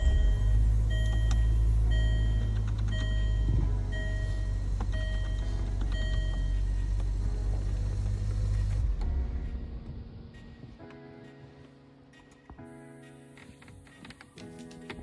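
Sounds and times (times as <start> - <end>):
warning chime beeping: 0.0 - 6.9
car engine rumbling: 0.0 - 10.9.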